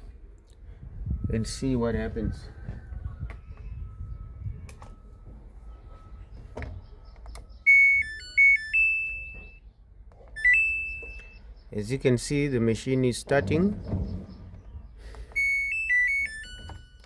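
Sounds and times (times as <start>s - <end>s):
electronic power-on tune of beeps: 7.5s - 9.6s, 10.4s - 11.4s, 15.4s - 17.0s
rising beep: 7.7s - 9.6s, 10.4s - 11.4s, 15.4s - 17.0s.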